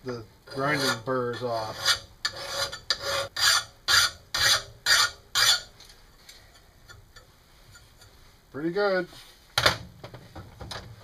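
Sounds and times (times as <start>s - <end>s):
file rasping on steel blade: 0.5s - 5.7s.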